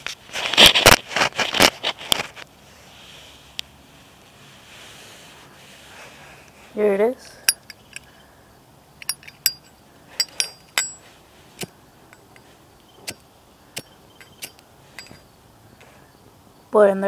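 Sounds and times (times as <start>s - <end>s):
metal lighter clicks and clinks: 7.5s - 8.2s, 9.0s - 11.0s, 13.8s - 15.2s.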